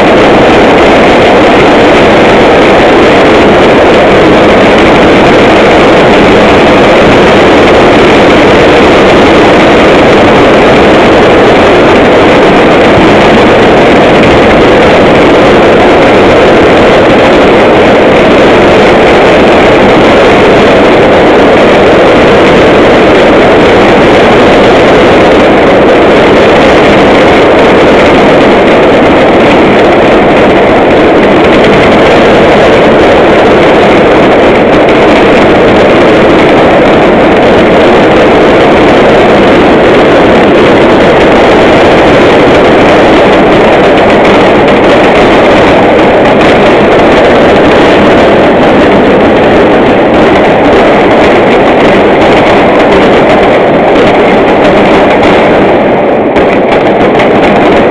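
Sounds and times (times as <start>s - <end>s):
loud engine-like noise: 0.0s - 57.9s.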